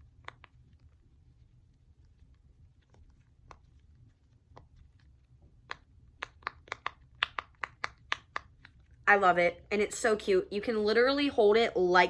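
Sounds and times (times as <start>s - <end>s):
silicone fidget bubbles popping: 5.6s - 8.8s.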